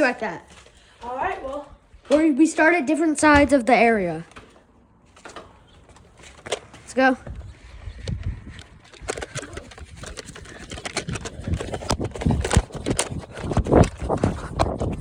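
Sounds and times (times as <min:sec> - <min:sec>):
jostling and rustling: 0:03.2 - 0:15.0.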